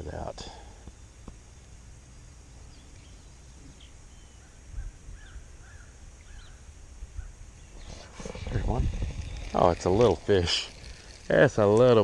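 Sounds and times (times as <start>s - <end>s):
small bird chirping: 0.9s - 12.0s
wind rumbling on microphone: 4.6s - 12.0s.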